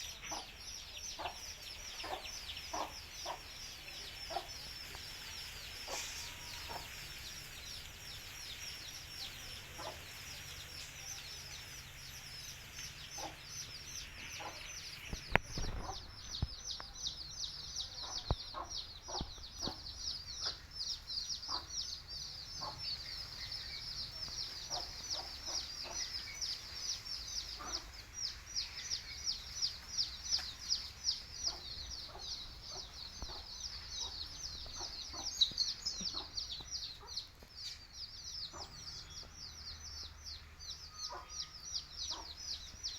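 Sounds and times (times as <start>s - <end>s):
chicks peeping: 0.0s - 42.9s
hen clucking: 0.1s - 4.6s, 13.1s - 20.6s, 31.4s - 37.2s.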